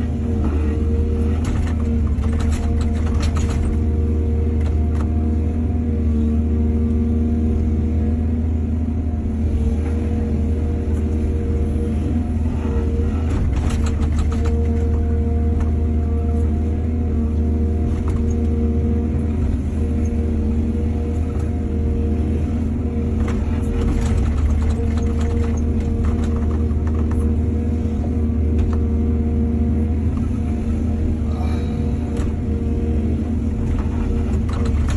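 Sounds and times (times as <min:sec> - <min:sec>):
diesel engine running: 0:00.0 - 0:34.9
knocks and rattles: 0:01.4 - 0:03.8, 0:13.3 - 0:15.0, 0:23.2 - 0:27.3.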